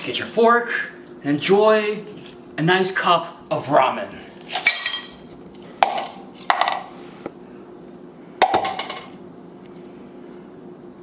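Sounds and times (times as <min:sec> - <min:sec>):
dishes and cutlery clinking: 0:04.6 - 0:05.2.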